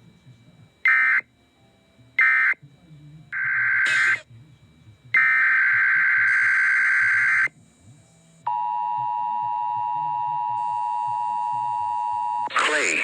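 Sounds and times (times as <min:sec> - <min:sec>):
digital data tones: 0:05.2 - 0:07.5.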